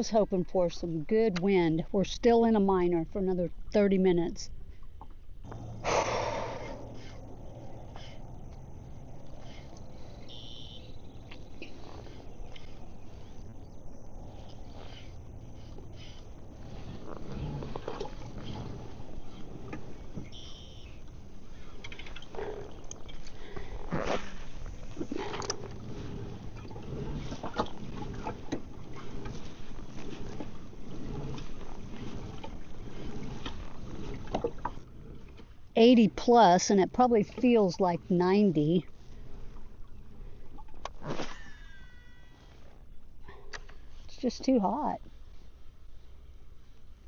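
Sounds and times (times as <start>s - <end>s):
wind rumbling on microphone: 4.5s - 41.2s
water lapping against kayak hull: 4.5s - 44.1s.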